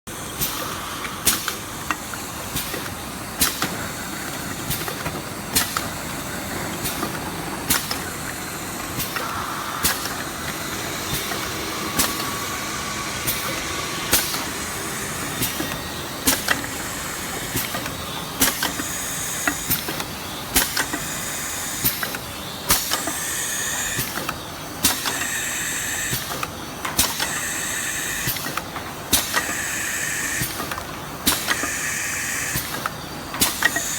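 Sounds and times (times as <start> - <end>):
pneumatic clack: 0.4 - 33.9
hot air blower hissing: 7.7 - 19.8
air hissing bursts: 8.9 - 16.6.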